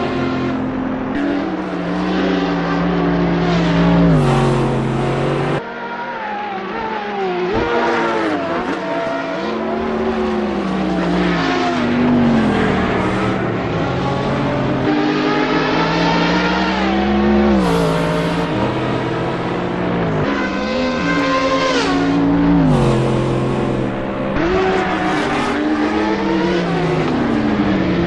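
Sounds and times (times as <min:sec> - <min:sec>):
car engine revving: 0:00.0 - 0:05.6, 0:06.5 - 0:28.0.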